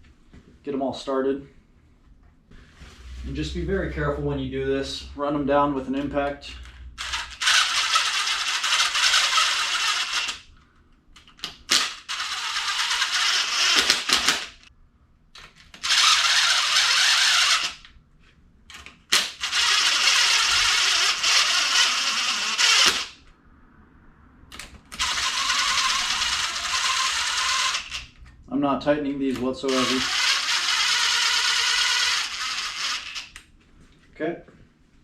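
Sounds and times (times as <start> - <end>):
impact gun running bolts: 11.2 - 14.7, 29.3 - 33.3.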